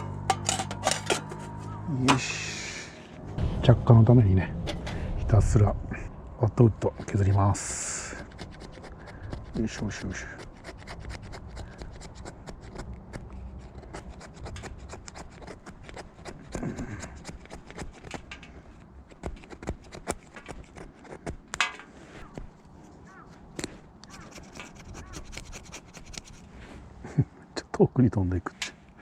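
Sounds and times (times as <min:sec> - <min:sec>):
knife scraping wood: 0:06.9 - 0:26.6.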